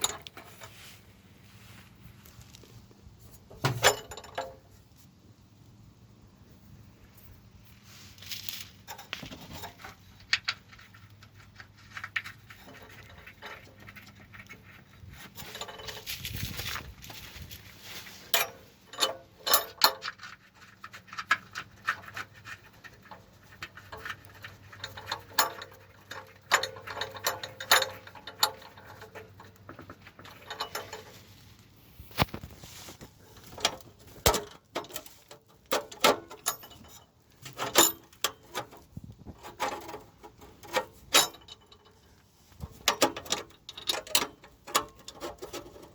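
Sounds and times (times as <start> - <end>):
metallic tool clinks and rattles: 12.6 - 16.8, 18.2 - 20.5, 23.0 - 31.2, 33.4 - 38.8, 39.4 - 45.9.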